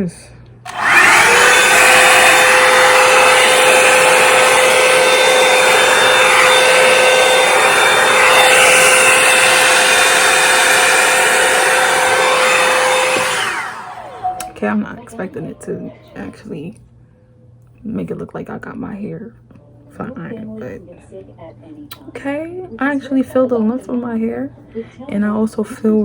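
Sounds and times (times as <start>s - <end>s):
hair dryer brush running: 0.7s - 14.6s.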